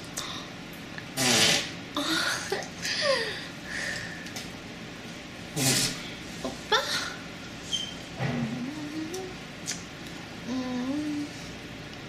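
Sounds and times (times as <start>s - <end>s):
squeaky fart sound effects: 1.2s - 1.8s, 5.6s - 6.1s.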